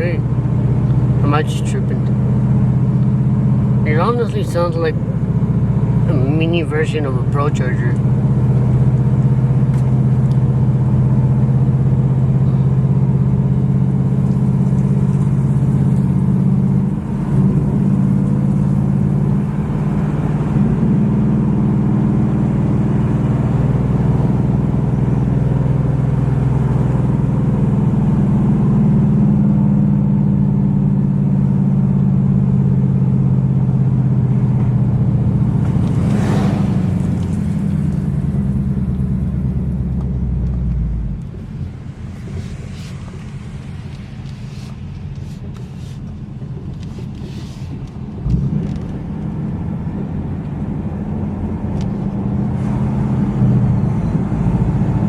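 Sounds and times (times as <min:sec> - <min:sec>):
car engine cruising: 0:00.0 - 0:55.0
short rushing sound: 0:35.7 - 0:38.1.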